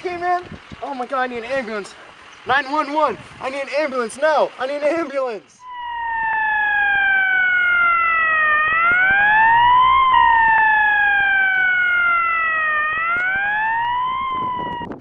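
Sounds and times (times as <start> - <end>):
ambulance siren wailing: 5.6 - 15.0.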